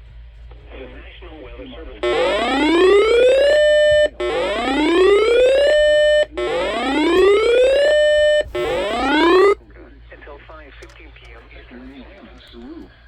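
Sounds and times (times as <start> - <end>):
electronic whoop alarm: 2.0 - 9.6.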